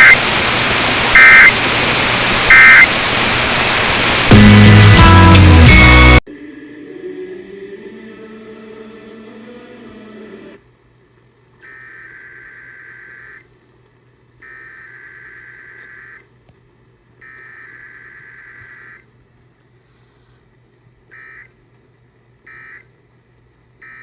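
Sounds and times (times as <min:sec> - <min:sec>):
buzzy warbling data bursts: 0:01.2 - 0:01.6, 0:02.5 - 0:02.9.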